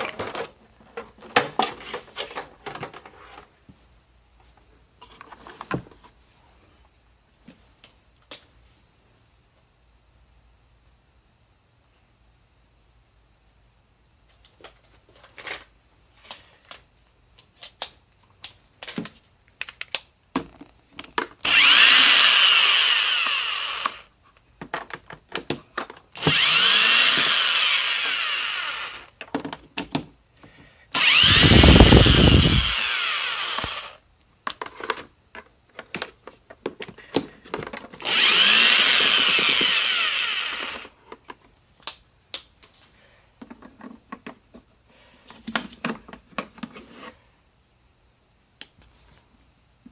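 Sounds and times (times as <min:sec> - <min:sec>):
cordless drill whirring: 0:21.4 - 0:24.1, 0:26.2 - 0:29.1, 0:30.9 - 0:34.0, 0:38.0 - 0:40.9.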